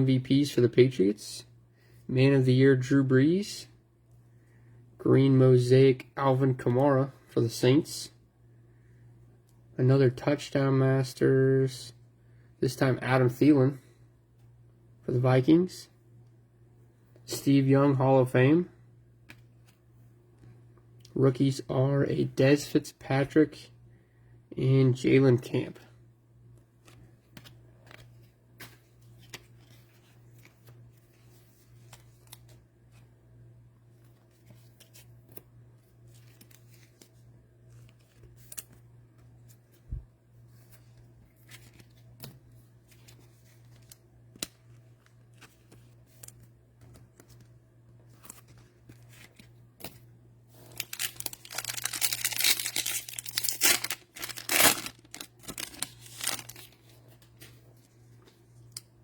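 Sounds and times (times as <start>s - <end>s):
cellophane wrapper tearing: 50.7s - 56.8s.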